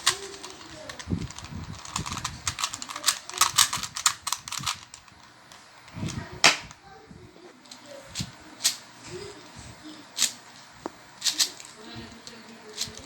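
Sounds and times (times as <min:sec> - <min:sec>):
plastic cube clicking as turned: 0:00.0 - 0:05.2, 0:11.2 - 0:11.7.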